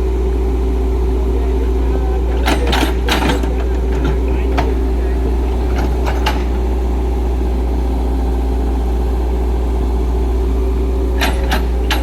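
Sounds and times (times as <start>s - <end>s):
excavator diesel engine running: 0.0s - 12.0s.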